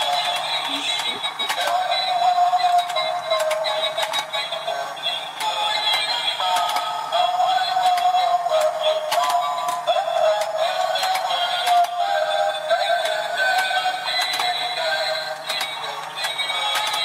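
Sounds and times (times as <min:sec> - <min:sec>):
tinny electronic toy melody: 0:00.0 - 0:17.0
sharp plastic clicks: 0:02.6 - 0:04.4, 0:05.4 - 0:06.9, 0:07.7 - 0:12.0, 0:12.7 - 0:14.8, 0:15.4 - 0:17.0.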